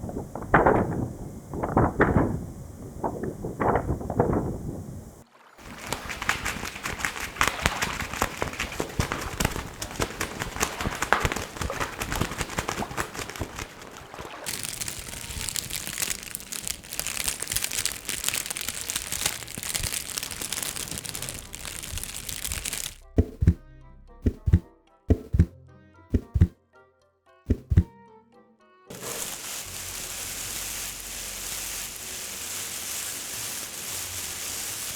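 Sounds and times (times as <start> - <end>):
prop crinkling and crackling: 0.0 - 23.1, 28.9 - 34.9
sharp thumps: 23.1 - 23.6, 24.2 - 25.5, 26.1 - 26.5, 27.5 - 27.9.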